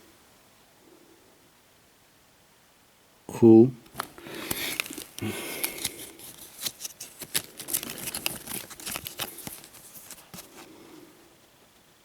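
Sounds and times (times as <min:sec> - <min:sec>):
packaging crinkling and rustling: 0:03.8 - 0:10.8.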